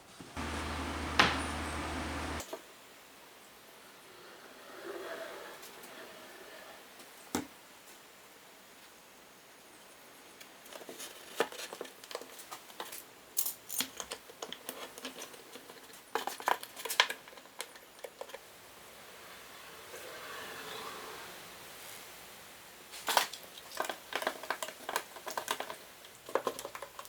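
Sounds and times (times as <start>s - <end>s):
small hard objects clicking: 23.1s - 27.0s.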